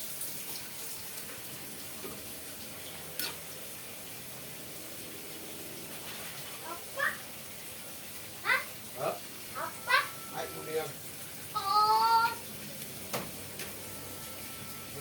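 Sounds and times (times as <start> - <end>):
running water hissing: 0.0 - 15.0
brief high-pitched call: 9.6 - 10.9.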